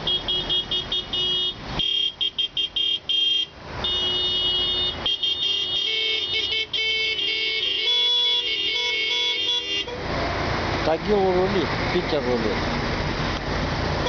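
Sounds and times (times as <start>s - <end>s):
car horns honking: 0.0s - 10.2s.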